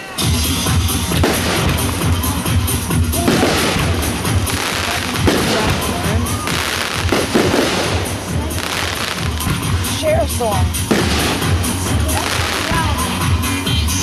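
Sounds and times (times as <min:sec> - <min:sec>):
fireworks crackling and popping: 0:00.0 - 0:14.0
music playing: 0:00.0 - 0:14.0.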